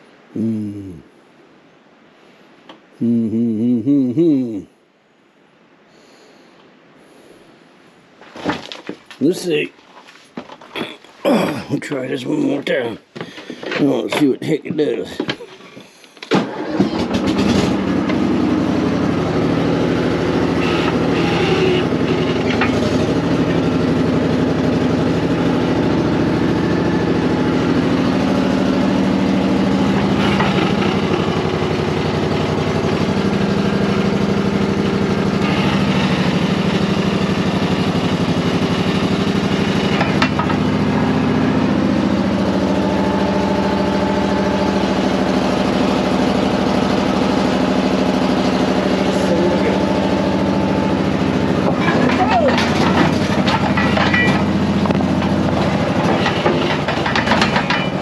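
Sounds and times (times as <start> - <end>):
skid steer engine running: 16.3 - 58.0.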